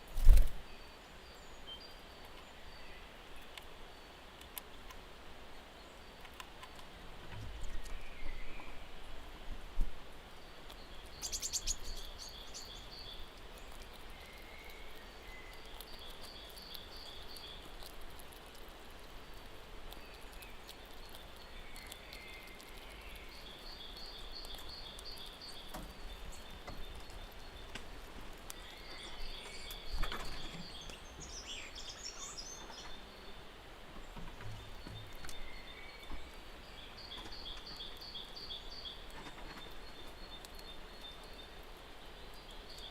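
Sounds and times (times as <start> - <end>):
steady background hiss: 0.0 - 42.9
bird chirps: 10.7 - 17.7, 28.4 - 33.4
bird trilling: 11.2 - 12.7.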